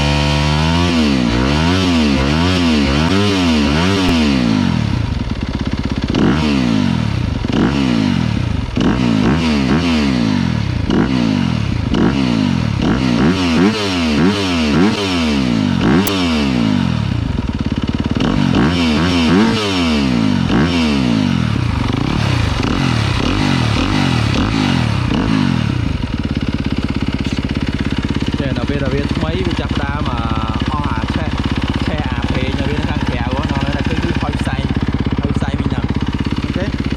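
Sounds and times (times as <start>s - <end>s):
motorcycle engine idling: 0.0s - 36.9s
motorcycle engine revving: 0.0s - 36.9s.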